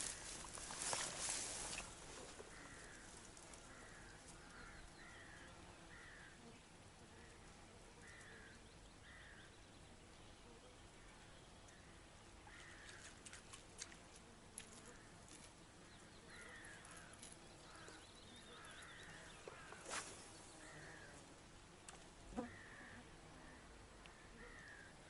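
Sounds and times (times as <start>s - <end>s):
crow cawing: 3.7s - 6.3s, 22.4s - 23.6s, 24.2s - 24.9s.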